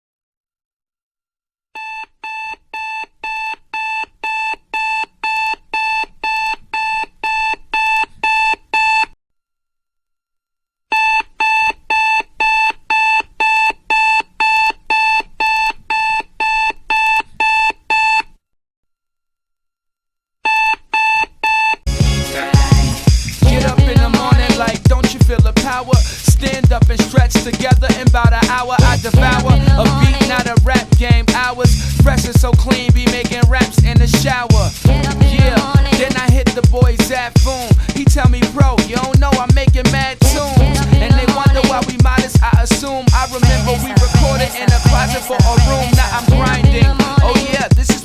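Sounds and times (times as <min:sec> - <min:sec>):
electronic alarm clock beeping: 0:01.8 - 0:09.1, 0:10.9 - 0:18.2, 0:40.4 - 0:47.9
music: 0:21.9 - 0:48.0.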